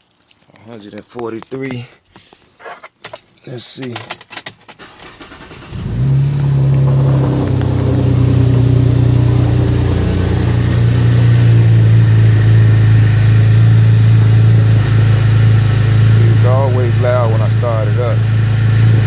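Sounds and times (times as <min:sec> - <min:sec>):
car engine starting and idling: 0:04.4 - 0:19.0.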